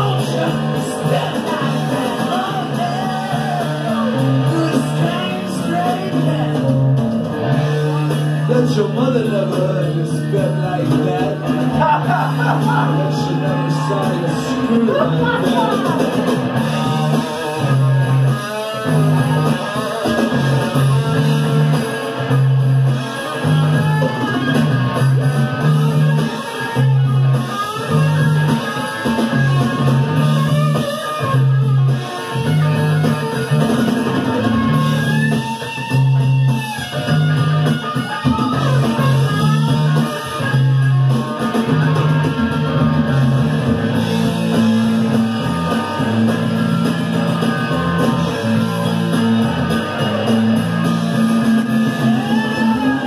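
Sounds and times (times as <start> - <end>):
drum kit: 0.0 - 53.0
electric guitar: 0.0 - 53.0.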